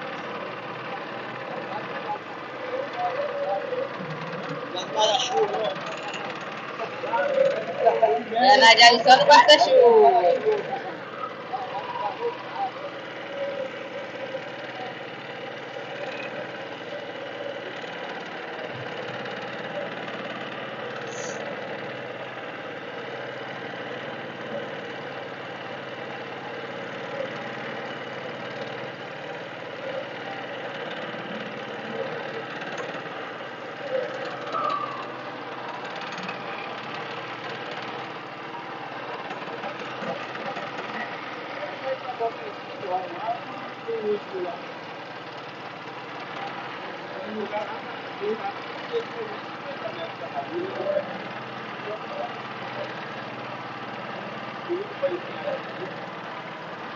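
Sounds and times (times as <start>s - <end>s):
small boat engine running: 0.0s - 56.9s.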